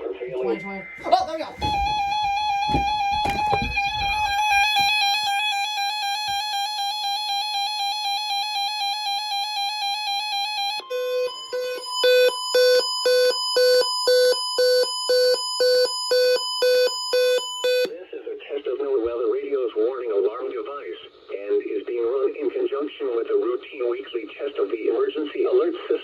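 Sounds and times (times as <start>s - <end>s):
steady buzzy alarm tone: 0.0s - 17.9s.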